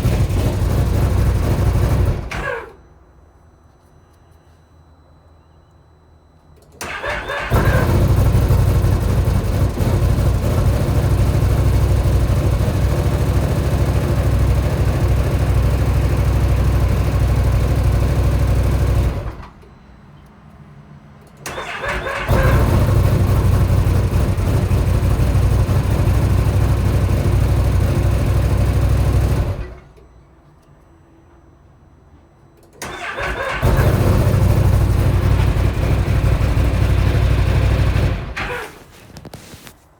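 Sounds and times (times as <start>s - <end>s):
engine cranking and starting: 0.0s - 2.8s, 6.8s - 19.6s, 21.3s - 30.0s, 32.7s - 39.7s
engine running steadily: 0.0s - 2.8s, 6.8s - 20.6s, 21.2s - 30.0s, 32.7s - 39.7s.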